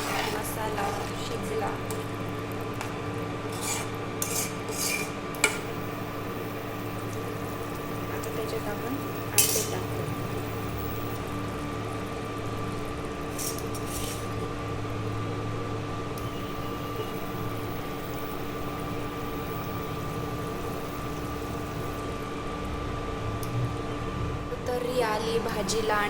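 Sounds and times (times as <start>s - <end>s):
steady hum: 0.0s - 26.0s.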